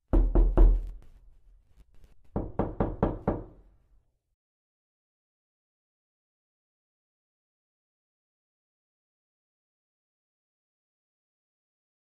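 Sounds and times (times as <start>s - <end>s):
knocking on a door: 0.1s - 0.9s, 2.4s - 3.6s.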